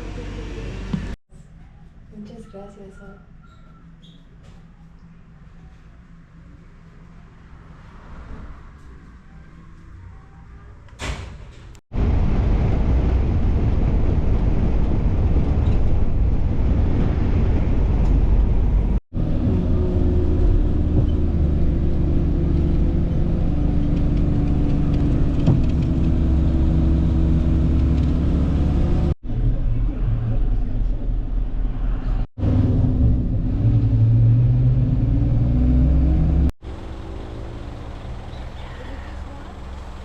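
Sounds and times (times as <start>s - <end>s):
road rumble: 0.0s - 1.8s, 5.3s - 40.0s
vehicle engine running: 32.4s - 40.0s.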